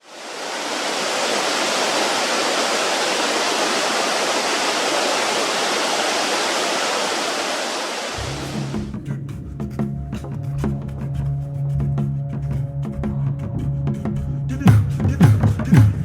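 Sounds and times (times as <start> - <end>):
flowing water rushing: 0.0 - 8.9.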